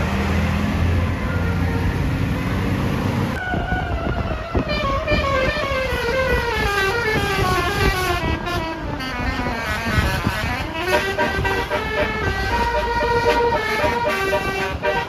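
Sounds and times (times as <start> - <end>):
musical bus horn tune: 3.4 - 15.0.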